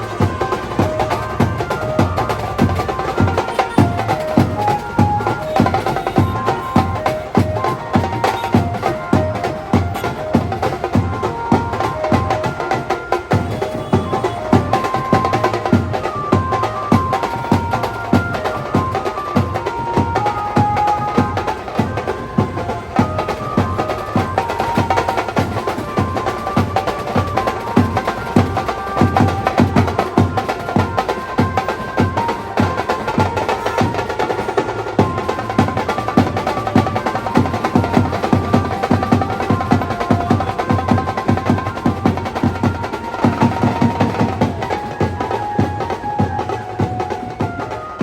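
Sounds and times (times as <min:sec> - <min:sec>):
banjo melody: 0:00.0 - 0:48.0
fast drumming: 0:00.0 - 0:48.0.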